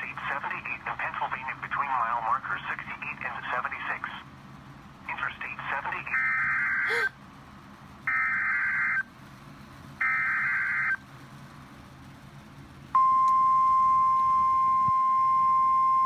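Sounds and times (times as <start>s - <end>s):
steady weather-radio alert tone: 0.0s - 4.3s, 5.1s - 7.1s.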